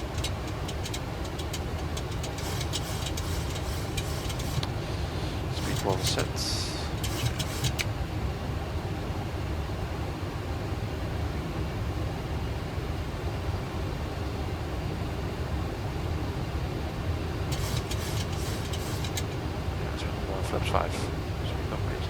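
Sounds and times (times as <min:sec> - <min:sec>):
aircraft cockpit airflow rush: 0:00.0 - 0:08.1, 0:17.2 - 0:22.0.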